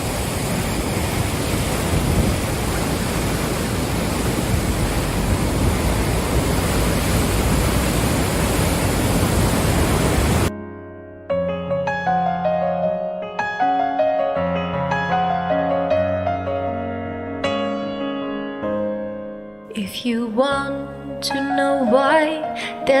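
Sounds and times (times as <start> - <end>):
floodwater rushing: 0.0 - 10.5
piano notes: 10.4 - 23.0.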